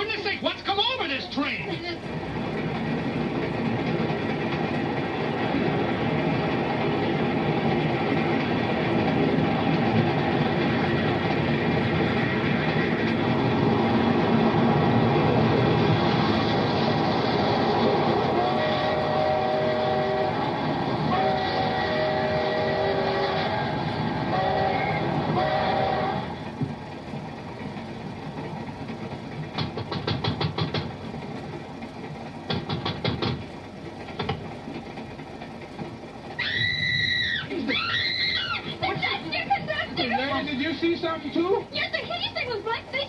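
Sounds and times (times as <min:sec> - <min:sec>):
train rumbling and clattering: 0:00.0 - 0:43.0
train whistle blasts: 0:18.2 - 0:26.3.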